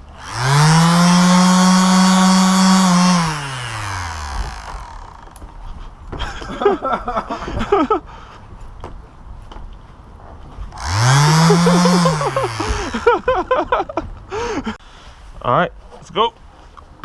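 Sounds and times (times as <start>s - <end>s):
orbital sander running: 0.0s - 5.5s, 10.8s - 13.2s.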